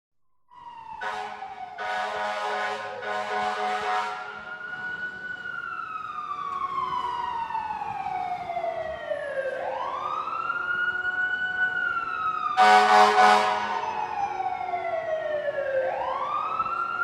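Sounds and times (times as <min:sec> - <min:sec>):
fire truck siren wailing: 0:00.5 - 0:17.0
truck horn blast: 0:01.0 - 0:04.4, 0:12.6 - 0:13.8.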